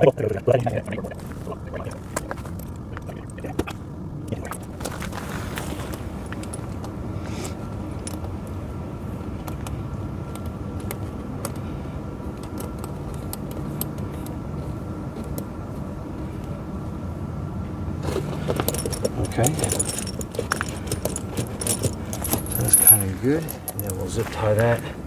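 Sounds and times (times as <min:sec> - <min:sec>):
metal chain links clinking: 0:18.4 - 0:24.3.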